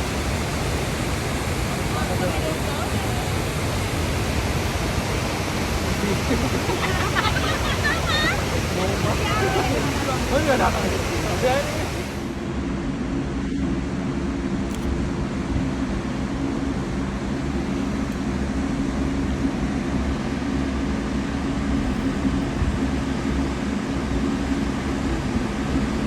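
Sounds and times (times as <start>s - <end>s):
cable car rushing noise: 0.0s - 12.4s
low mechanical hum: 0.0s - 26.0s.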